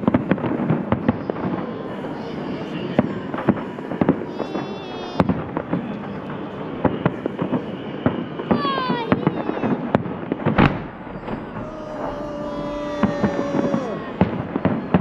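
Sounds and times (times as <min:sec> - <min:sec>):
fireworks bangs: 0:00.0 - 0:15.0
heavy firework boom: 0:10.0 - 0:15.0.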